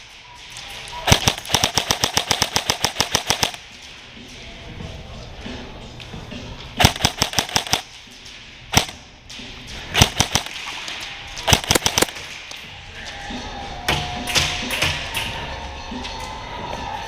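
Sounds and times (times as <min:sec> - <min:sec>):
airsoft guns firing: 0:00.0 - 0:03.7, 0:06.8 - 0:08.0, 0:08.7 - 0:09.1, 0:09.9 - 0:12.5.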